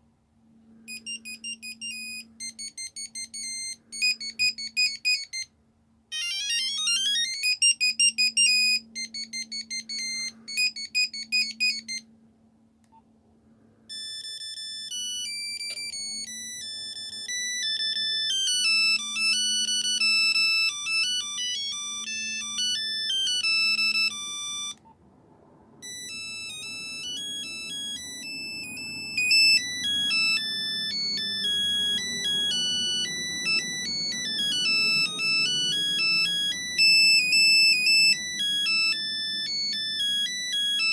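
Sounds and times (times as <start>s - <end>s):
mobile phone beeping ringtones: 0.9s - 5.5s, 6.1s - 12.1s, 13.9s - 24.9s, 25.8s - 40.9s.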